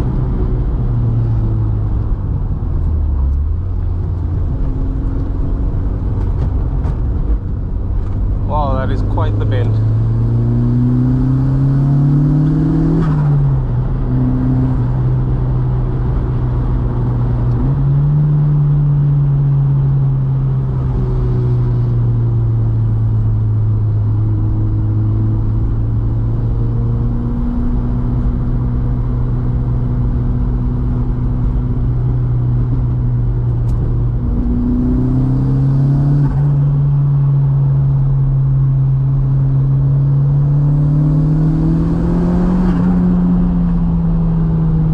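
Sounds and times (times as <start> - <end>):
car engine under load: 0.0 - 44.9
road noise: 0.0 - 44.9.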